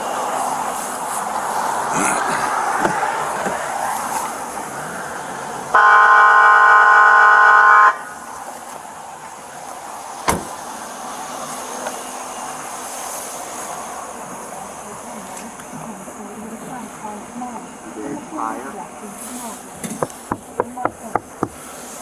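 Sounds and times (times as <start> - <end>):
traffic hum: 0.0 - 22.0
car horn blaring: 5.7 - 8.2
sharp knock: 10.3 - 10.5.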